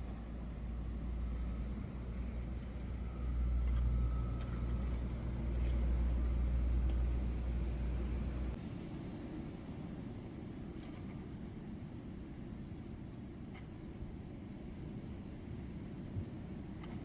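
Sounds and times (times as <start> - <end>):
low rumble: 0.0 - 8.6.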